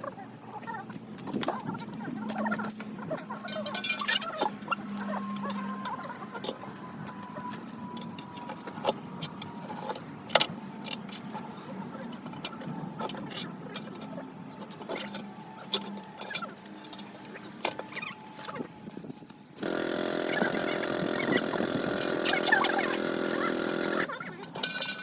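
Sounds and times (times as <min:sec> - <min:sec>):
metal hand tools clinking: 0:02.4 - 0:05.4, 0:19.6 - 0:25.0.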